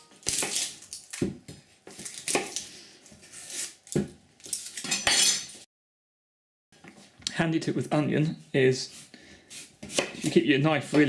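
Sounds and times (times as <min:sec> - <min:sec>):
knife cutting onion on board: 0:08.9 - 0:11.0.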